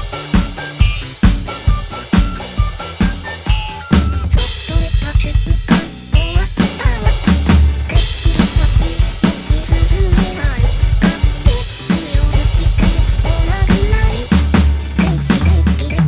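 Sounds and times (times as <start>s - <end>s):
drum kit: 0.0s - 16.0s
person singing: 4.4s - 16.0s.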